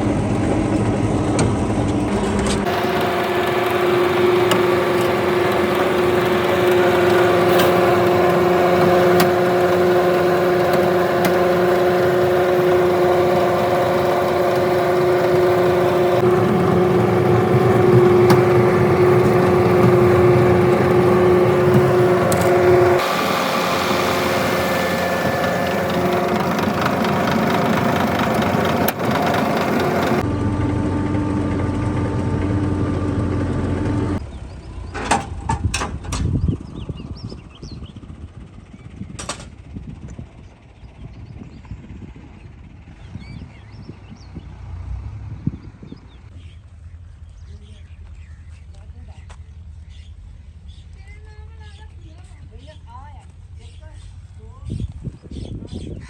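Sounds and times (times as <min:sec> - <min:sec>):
brick-making machinery humming: 0:00.0 - 0:34.2.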